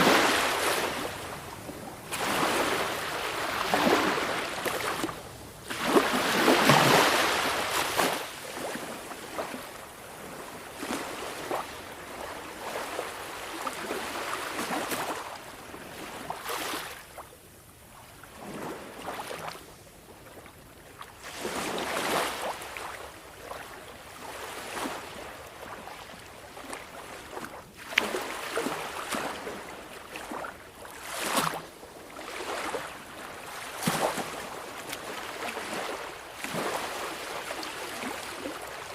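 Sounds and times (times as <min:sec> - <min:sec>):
waves washing against shore: 0:00.0 - 0:17.0.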